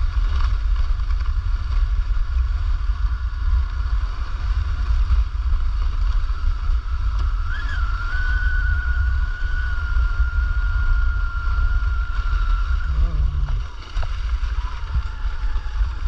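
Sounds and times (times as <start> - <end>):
heavy low rumble: 0.0 - 16.0
electric motor whining: 4.8 - 16.0.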